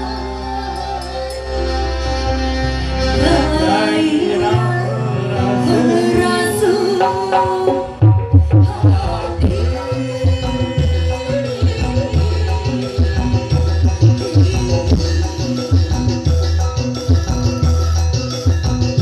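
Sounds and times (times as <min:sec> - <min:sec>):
dangdut music over sound system: 0:00.0 - 0:19.0
heavy bass drum beats: 0:06.2 - 0:19.0.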